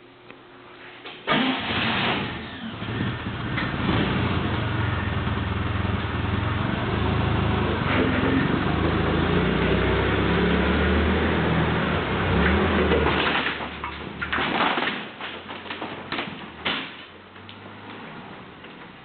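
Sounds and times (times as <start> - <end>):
forklift engine running: 1.3 - 13.2.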